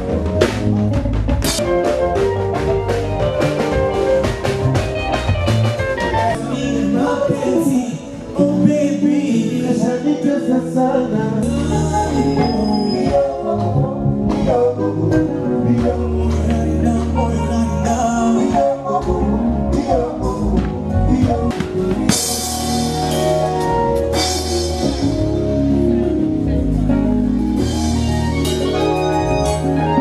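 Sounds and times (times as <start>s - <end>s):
drums: 0.0s - 9.4s, 11.4s - 30.0s
bass line: 0.0s - 30.0s
person singing: 6.0s - 26.0s.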